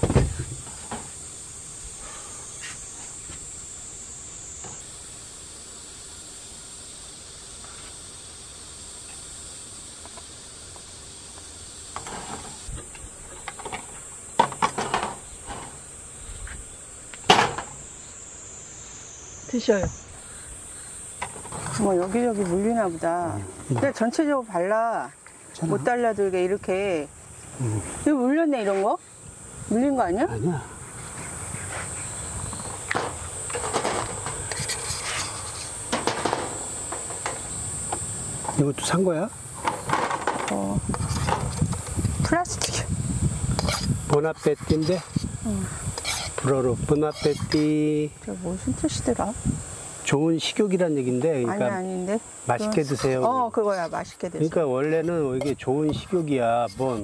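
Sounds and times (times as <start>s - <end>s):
insects chirring: 0.0s - 57.0s
tableware knocking and clattering: 35.9s - 37.4s.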